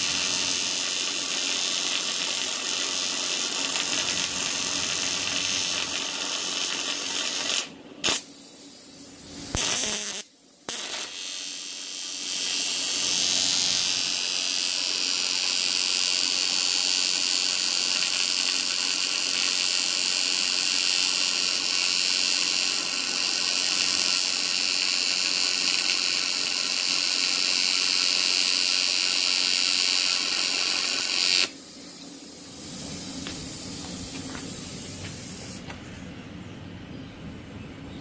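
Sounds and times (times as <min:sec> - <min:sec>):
welding arc buzzing hiss: 0:00.0 - 0:36.1
soft hiss: 0:30.4 - 0:36.3.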